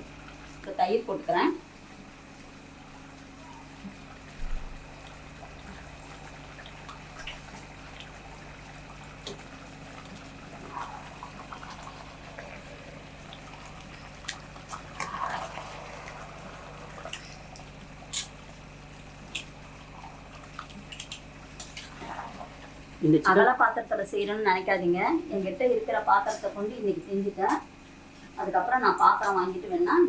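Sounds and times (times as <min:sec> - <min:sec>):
steady low hum: 0:00.0 - 0:30.0
soft wet plops and drips: 0:03.8 - 0:22.7.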